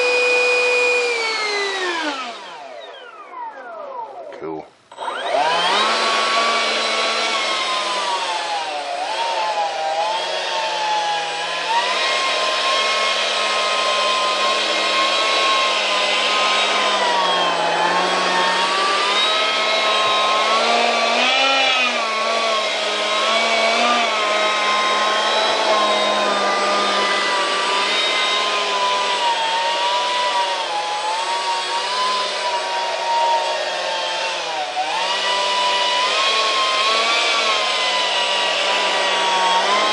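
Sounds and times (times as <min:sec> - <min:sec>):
electric ducted fan whine: 0:00.8 - 0:31.9.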